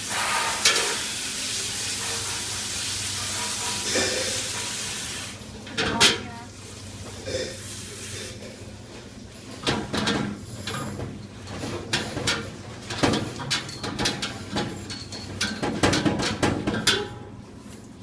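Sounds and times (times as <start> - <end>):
dishwasher parts clattering: 9.6 - 17.4.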